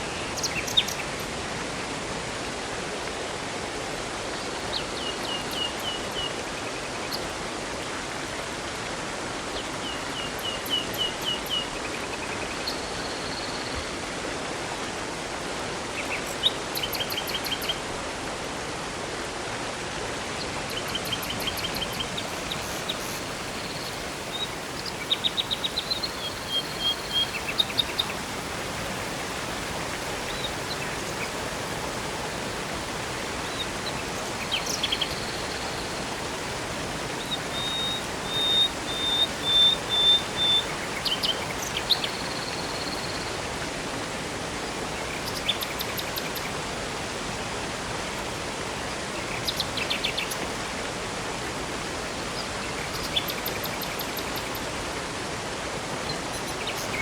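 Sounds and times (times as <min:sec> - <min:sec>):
river water rushing: 0:00.0 - 0:57.0
birds singing: 0:00.4 - 0:01.1, 0:20.7 - 0:43.4.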